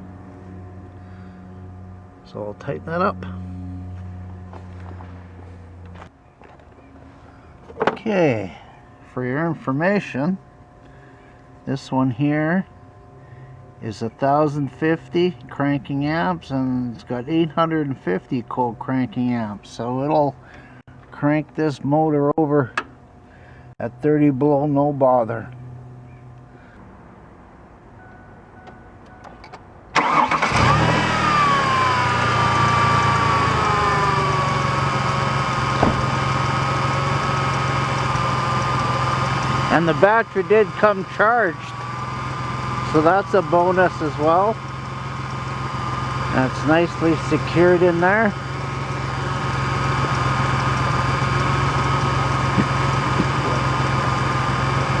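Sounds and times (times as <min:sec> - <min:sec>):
car engine cranking and idling: 0:00.0 - 0:12.0, 0:29.0 - 0:55.0.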